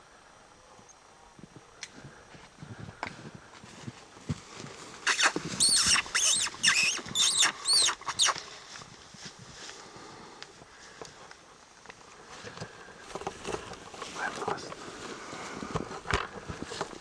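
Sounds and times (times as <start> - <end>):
high arching squeals: 5.0 - 8.4.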